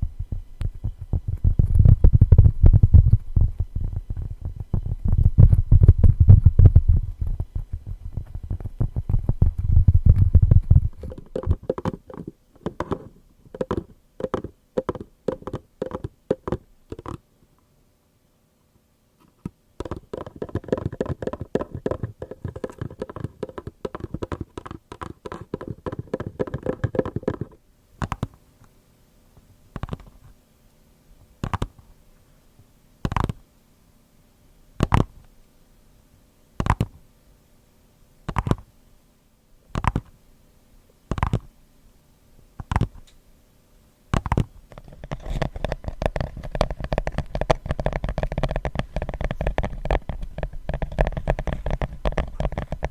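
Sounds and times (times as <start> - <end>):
tapping on cardboard box: 11.0 - 17.2, 19.8 - 28.3, 44.2 - 52.9.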